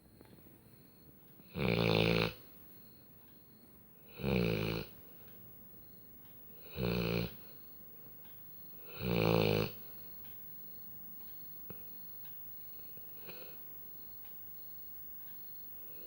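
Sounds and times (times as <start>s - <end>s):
dog snoring: 1.4s - 2.4s, 4.0s - 5.0s, 6.6s - 7.5s, 8.8s - 9.9s.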